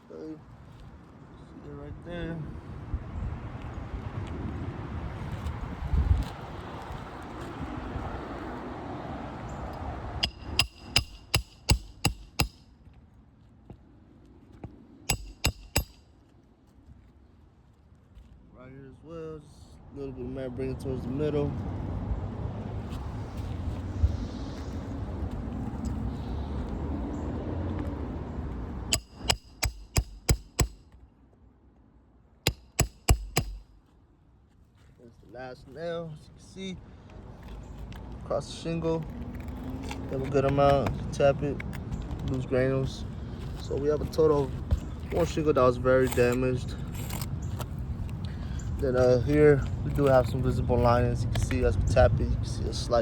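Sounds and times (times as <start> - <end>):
hammer tapping a shingle: 10.2 - 12.6, 15.1 - 16.0, 28.9 - 30.9, 32.5 - 33.8.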